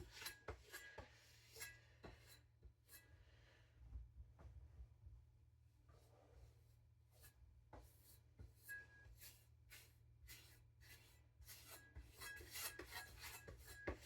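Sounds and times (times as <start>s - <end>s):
knife scraping on whetstone: 0.0s - 2.4s, 8.6s - 14.0s.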